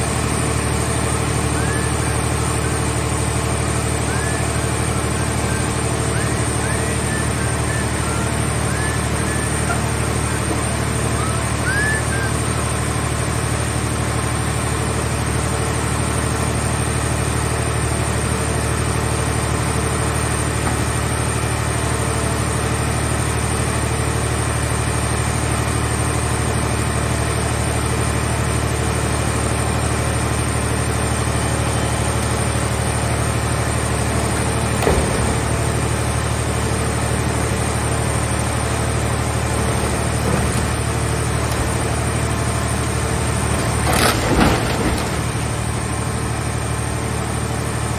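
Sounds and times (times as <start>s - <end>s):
baler engine running: 0.0s - 47.9s.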